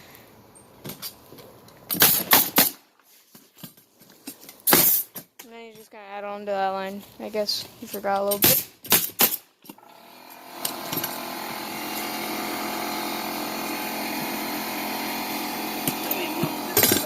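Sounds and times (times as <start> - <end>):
air compressor motor running: 9.8 - 17.0.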